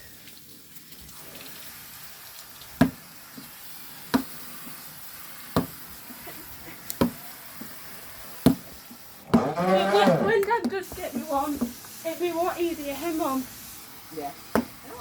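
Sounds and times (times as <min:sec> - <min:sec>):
faint steady hiss: 0:00.0 - 0:15.0
basketball bouncing: 0:05.6 - 0:05.8, 0:08.5 - 0:11.7, 0:14.5 - 0:14.8.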